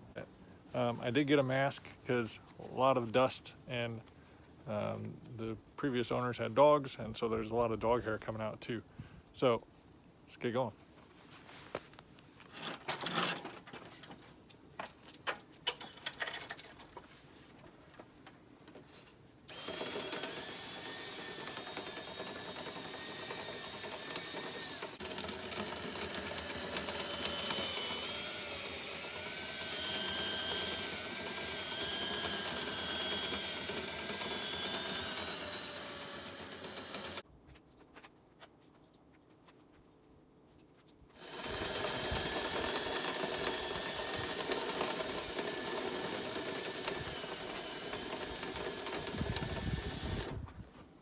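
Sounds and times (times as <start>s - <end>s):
drill motor running: 19.5s - 37.2s, 41.2s - 50.4s.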